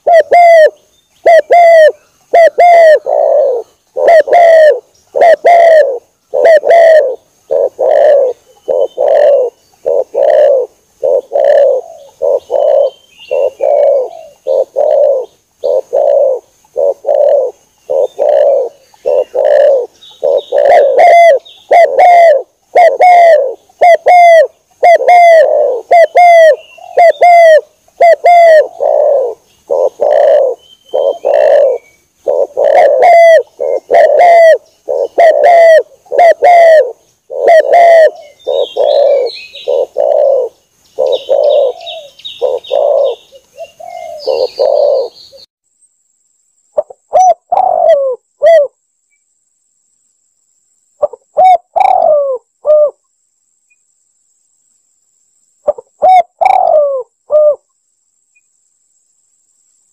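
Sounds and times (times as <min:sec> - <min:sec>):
small bird chirping: 0:00.0 - 0:27.4, 0:28.0 - 0:45.5
doves cooing: 0:00.0 - 0:45.5, 0:46.8 - 0:48.8, 0:51.0 - 0:53.0, 0:55.6 - 0:57.6.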